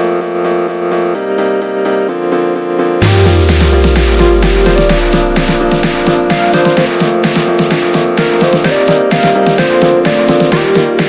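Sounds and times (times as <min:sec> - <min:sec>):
electronic music with driving beat: 0:03.0 - 0:11.0.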